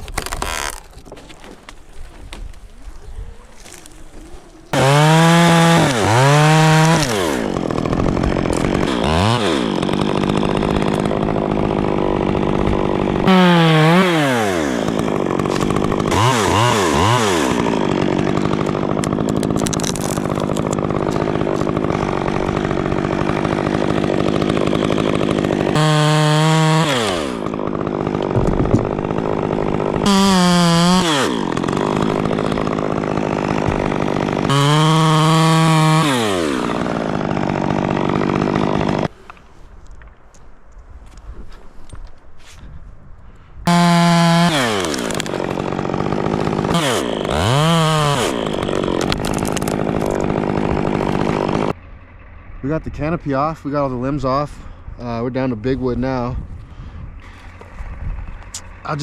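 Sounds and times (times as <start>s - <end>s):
chainsaw revving and cutting: 0.0s - 1.0s, 4.7s - 39.2s, 43.7s - 52.5s.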